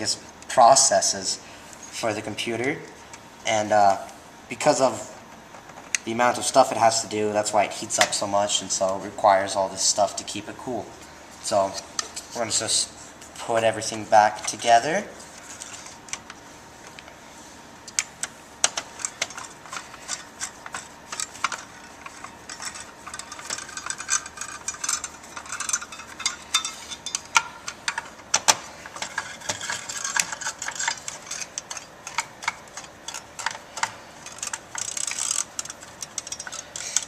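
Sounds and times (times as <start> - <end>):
clicks taps and rattling scrapes: 17.9 - 37.0.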